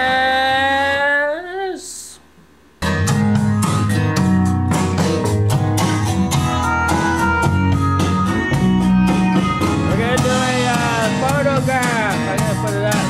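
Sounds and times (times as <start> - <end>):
music with steady beat: 2.8 - 13.0.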